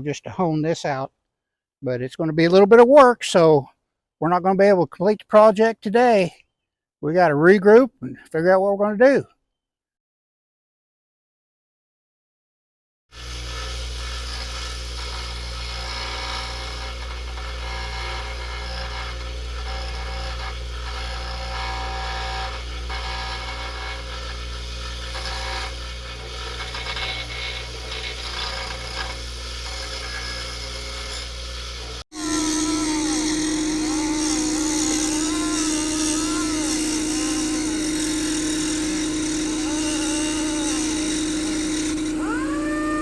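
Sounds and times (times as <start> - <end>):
power tool droning: 13.2 - 43.0
power tool humming: 13.2 - 43.0.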